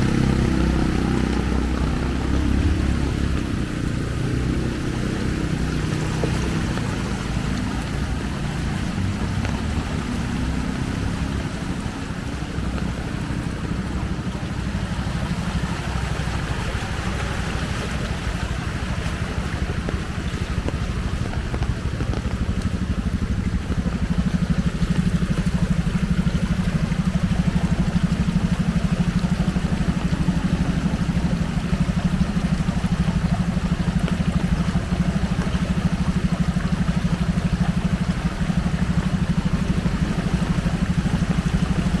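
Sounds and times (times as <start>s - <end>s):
small engine idling: 0.0s - 42.0s.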